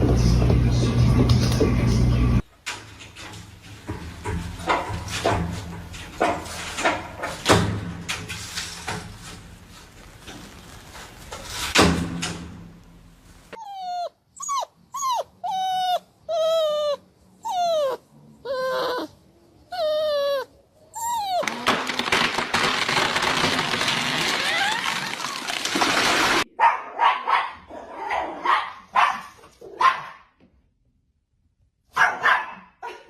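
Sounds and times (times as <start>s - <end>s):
dog whining yelps: 13.6s - 21.6s
dog yipping: 13.6s - 21.6s, 32.0s - 33.0s.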